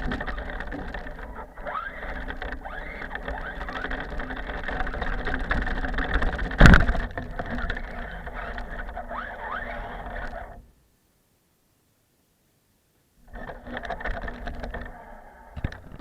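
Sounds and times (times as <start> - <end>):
rc car motor revving: 0.0 - 6.7, 7.3 - 10.6, 13.3 - 15.8.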